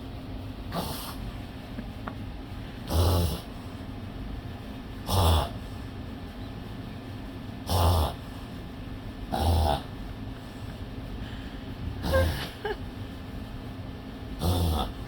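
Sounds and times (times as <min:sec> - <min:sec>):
dog reverse sneezing: 0:00.7 - 0:01.3.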